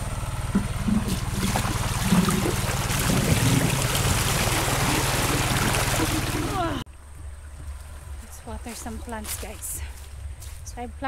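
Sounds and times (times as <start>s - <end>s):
small engine humming: 0.0s - 11.0s
water gushing and splashing: 0.6s - 6.8s.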